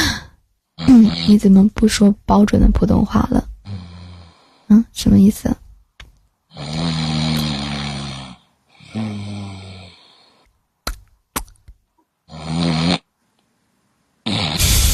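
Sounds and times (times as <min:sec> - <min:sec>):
person snoring loudly: 0:00.8 - 0:01.4, 0:03.6 - 0:04.6, 0:06.5 - 0:10.5, 0:12.3 - 0:13.1, 0:14.2 - 0:14.9.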